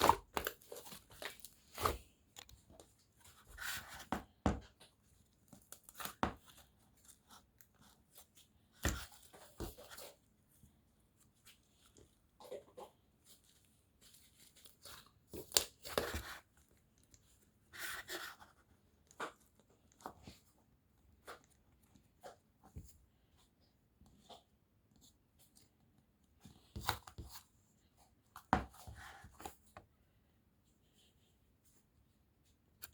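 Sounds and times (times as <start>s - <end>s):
slime worked by hand: 0.0s - 32.9s.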